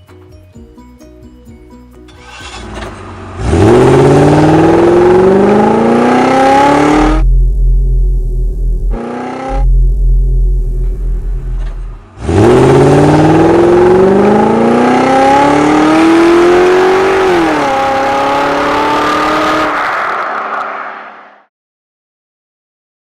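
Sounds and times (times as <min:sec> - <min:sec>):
car engine revving: 0:02.2 - 0:21.2
low steady hum: 0:06.7 - 0:13.8.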